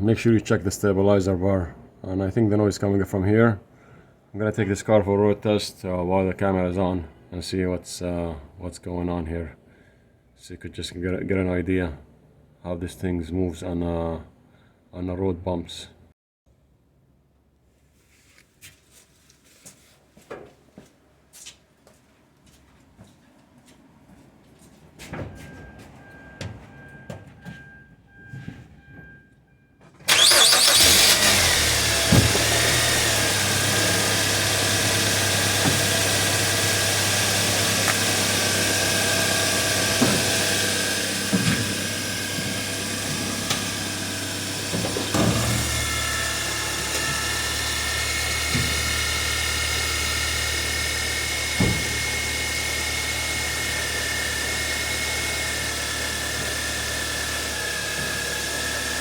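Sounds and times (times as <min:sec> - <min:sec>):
car engine and road noise: 0:24.0 - 0:59.0
suspension clunks: 0:25.1 - 0:49.9, 0:50.8 - 0:52.5.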